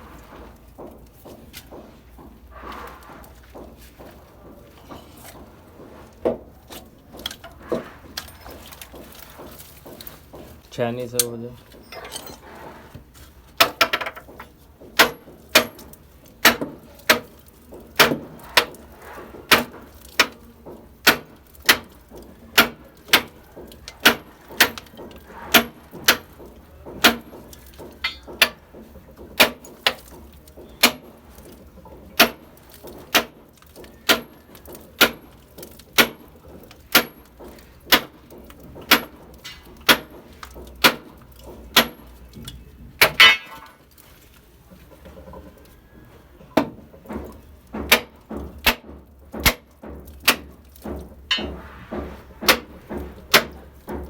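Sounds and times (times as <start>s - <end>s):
hammer striking steel chisel: 21.0s - 21.9s, 24.0s - 26.4s, 27.0s - 28.6s, 43.0s - 43.8s.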